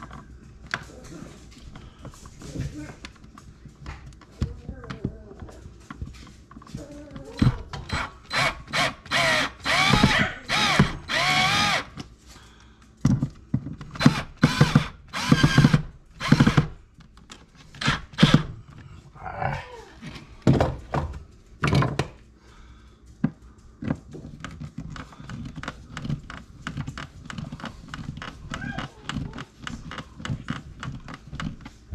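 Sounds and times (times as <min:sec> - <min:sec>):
power drill bursts: 0:07.9 - 0:12.0, 0:14.0 - 0:16.8, 0:17.8 - 0:18.5.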